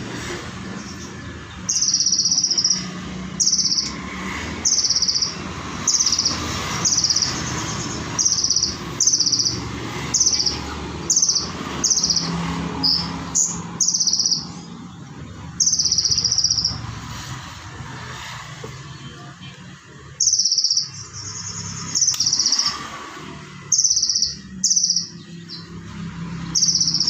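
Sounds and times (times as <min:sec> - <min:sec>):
bird trilled calls: 0:00.7 - 0:17.2, 0:20.2 - 0:22.9, 0:23.5 - 0:27.0.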